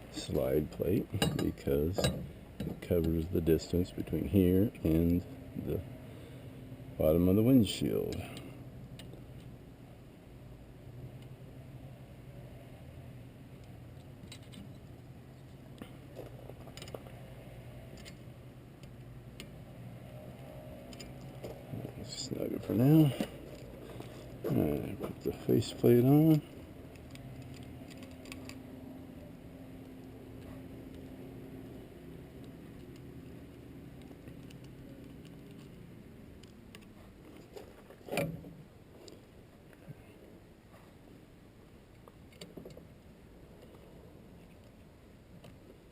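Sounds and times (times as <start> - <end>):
steady low hum: 0.0 - 45.9
metal clank: 1.1 - 2.9.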